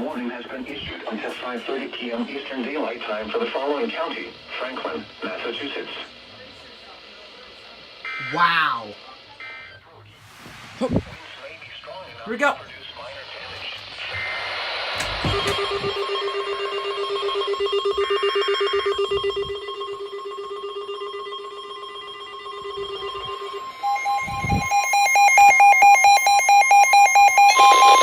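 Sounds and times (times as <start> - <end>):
rapid pulsing beeps: 3.0 - 10.1, 11.8 - 28.0
weather radio fluttering tone: 22.5 - 25.4, 26.9 - 28.0.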